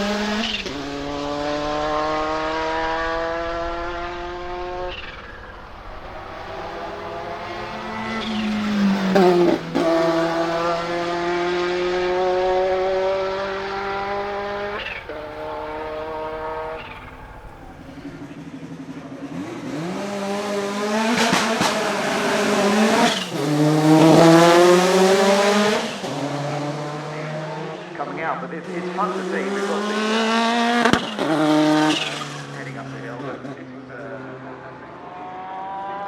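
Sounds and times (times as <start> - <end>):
race car engine accelerating: 0.0 - 36.0.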